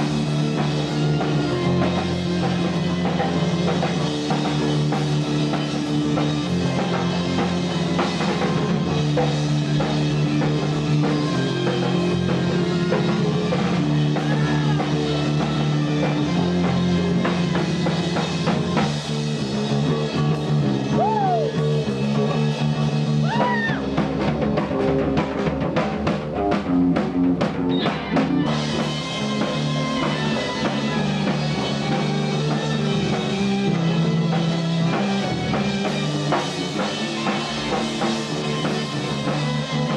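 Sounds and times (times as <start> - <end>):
rock music: 0.0 - 39.9.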